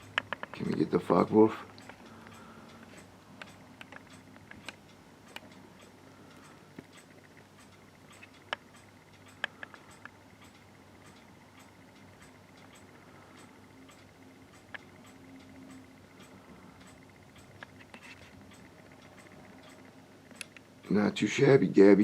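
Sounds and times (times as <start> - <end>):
faint ticking: 0.0 - 22.0
faint small clicks: 6.3 - 20.7.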